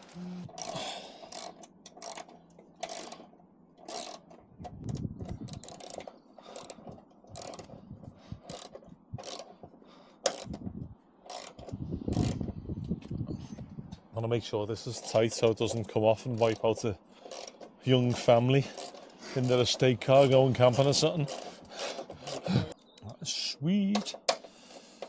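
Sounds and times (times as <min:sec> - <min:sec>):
ratchet spanner clicking: 0:00.4 - 0:07.8, 0:08.4 - 0:09.6, 0:10.2 - 0:10.6, 0:11.2 - 0:12.5, 0:15.0 - 0:17.7, 0:18.6 - 0:22.4.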